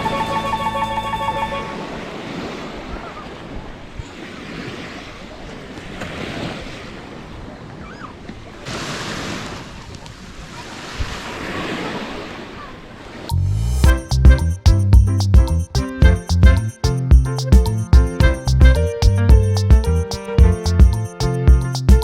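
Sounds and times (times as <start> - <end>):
waves washing onto beach: 1.3 - 13.4.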